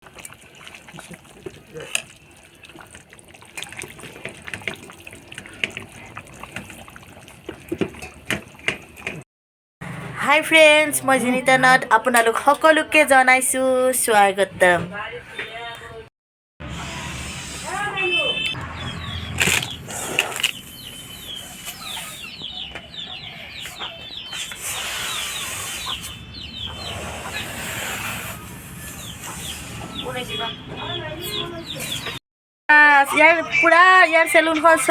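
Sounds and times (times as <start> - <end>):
water running and splashing: 0.0 - 9.2
birds chirping: 18.0 - 32.2.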